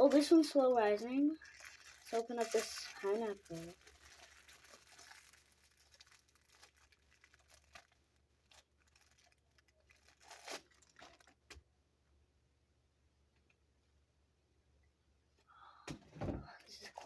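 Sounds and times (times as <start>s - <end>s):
plastic wrapper ripping: 0.0s - 11.6s
plastic wrapper crinkling: 0.0s - 11.7s.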